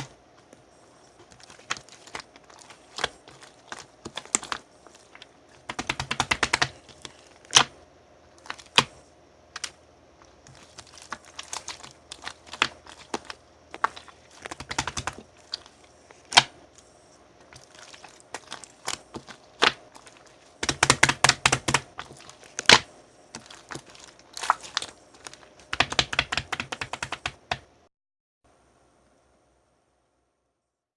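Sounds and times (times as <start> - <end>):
slime with beads crackling: 1.2 - 7.7, 8.4 - 8.9, 10.3 - 26.9.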